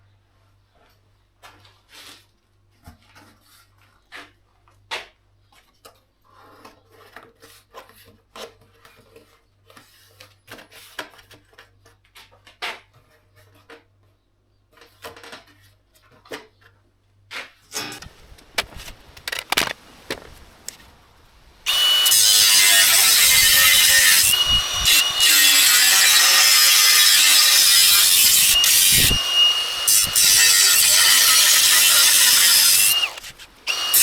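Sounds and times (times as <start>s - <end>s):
tools handled on a workbench: 18.0s - 20.8s.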